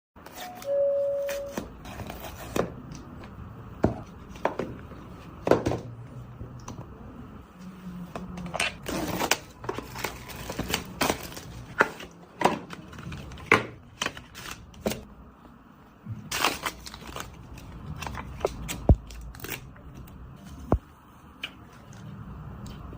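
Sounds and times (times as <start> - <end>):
paper or plastic wrap crinkling: 8.8 - 12.0, 16.3 - 19.6.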